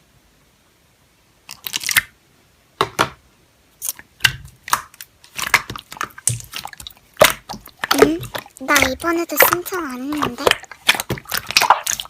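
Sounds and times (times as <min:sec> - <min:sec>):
slime squished by hand: 0:01.5 - 0:02.2, 0:03.8 - 0:12.0.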